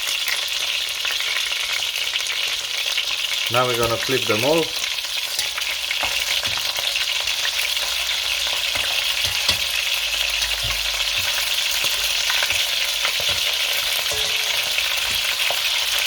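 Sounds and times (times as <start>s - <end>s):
chicken sizzling in hot oil: 0.0s - 16.0s
oil ticks and pops: 8.7s - 13.8s.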